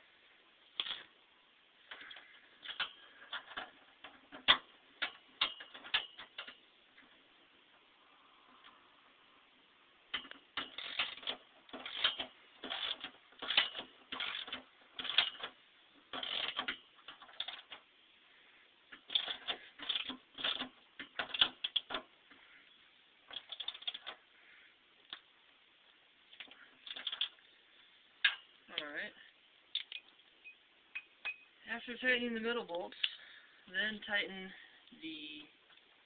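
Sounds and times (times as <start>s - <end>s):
hand ratchet clicking: 1.9s - 6.6s, 10.1s - 17.8s, 18.9s - 22.1s, 23.3s - 24.2s.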